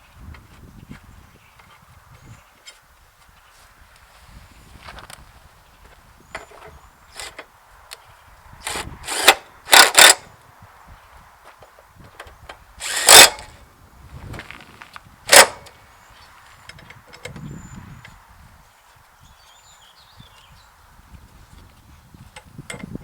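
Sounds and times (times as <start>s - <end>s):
power tool trigger bursts: 8.6s - 10.3s, 12.8s - 13.5s, 15.3s - 15.7s.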